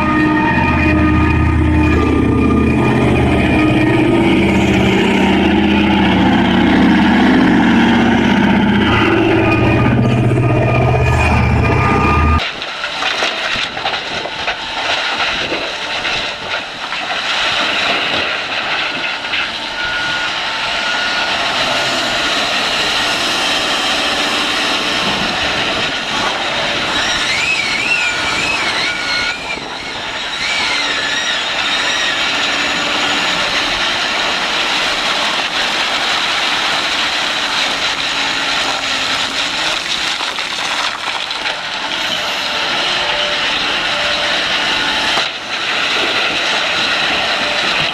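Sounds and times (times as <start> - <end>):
high-pitched whine: 0.0 - 12.6
excavator diesel engine running: 0.0 - 47.9.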